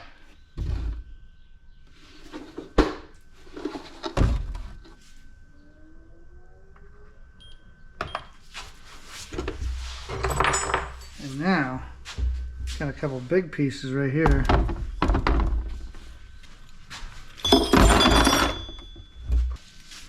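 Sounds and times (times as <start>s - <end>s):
rustling and shifting: 8.3s - 20.0s
handling knocks and thunks: 12.0s - 13.3s, 14.2s - 16.0s, 17.5s - 19.6s.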